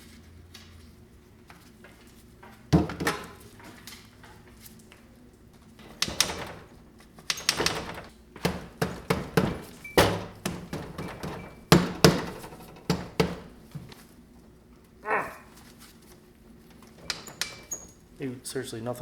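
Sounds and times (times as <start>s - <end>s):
metal knocks and clanks: 2.8s - 3.8s, 5.8s - 14.0s, 16.7s - 18.0s.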